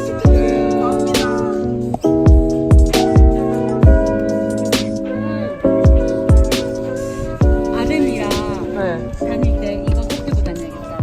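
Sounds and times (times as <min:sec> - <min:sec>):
sustained synth chords: 0:00.0 - 0:10.6
deep kick drum: 0:00.3 - 0:00.6, 0:02.1 - 0:04.2, 0:05.9 - 0:06.6, 0:07.4 - 0:07.9, 0:09.4 - 0:10.6.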